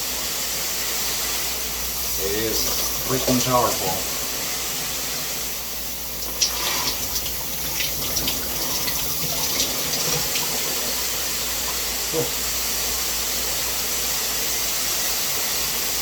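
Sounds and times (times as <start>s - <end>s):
shower water hissing: 0.0s - 16.0s
water spattering: 2.0s - 4.1s, 5.8s - 12.5s.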